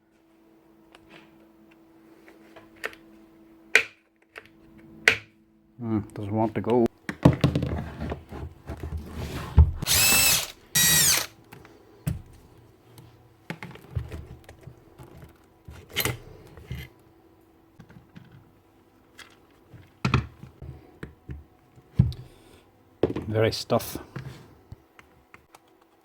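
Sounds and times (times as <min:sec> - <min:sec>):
cordless power drill whine: 0:09.8 - 0:11.4.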